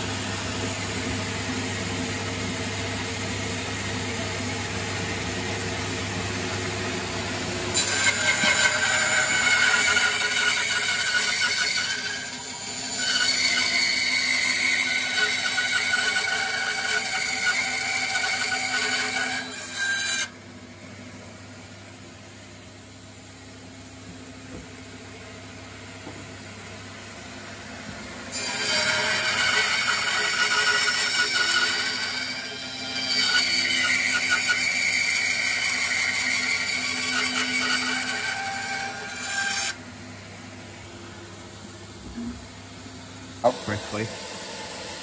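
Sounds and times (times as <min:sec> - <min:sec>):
bandsaw cutting timber: 0:07.6 - 0:20.3, 0:28.3 - 0:39.8.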